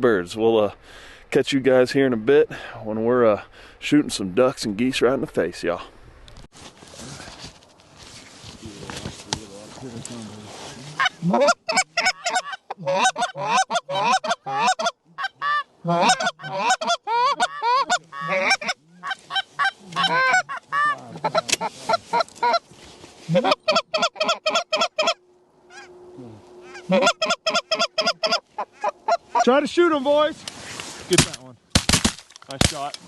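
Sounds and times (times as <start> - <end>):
geese honking and clucking: 10.8 - 29.6.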